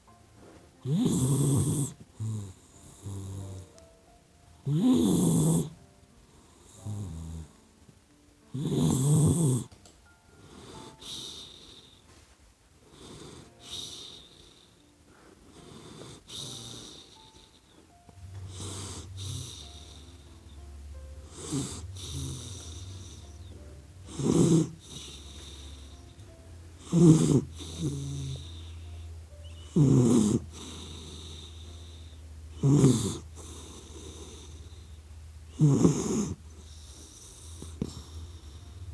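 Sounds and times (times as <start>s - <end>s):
puppy snoring: 0.0s - 4.0s, 4.6s - 38.9s
steady low hum: 17.9s - 38.9s.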